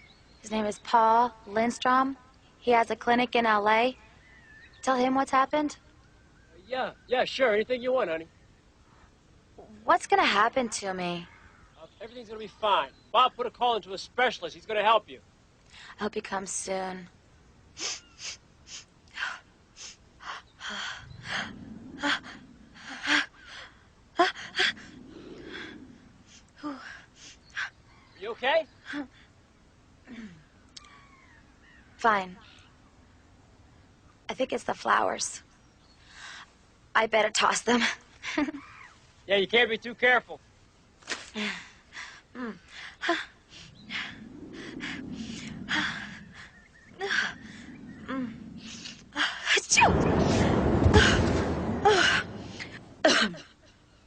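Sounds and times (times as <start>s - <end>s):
low rumble: 20.6s - 26.6s, 43.2s - 53.6s.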